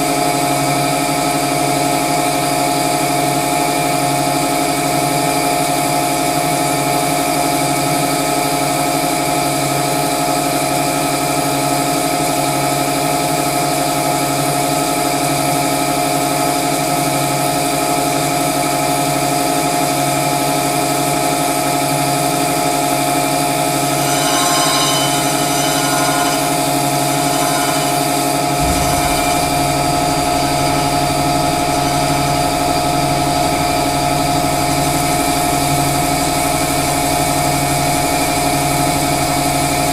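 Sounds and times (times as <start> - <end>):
grinding machine hum and whine: 23.6 - 36.0.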